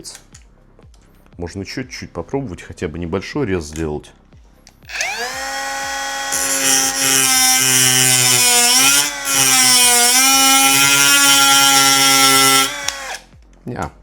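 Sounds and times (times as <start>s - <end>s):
angle grinder grinding ceramic: 4.9s - 13.3s.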